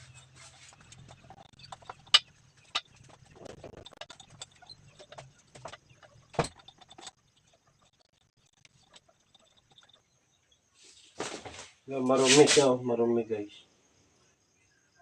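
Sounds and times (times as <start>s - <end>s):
tools clicking and knocking: 0.7s - 10.0s.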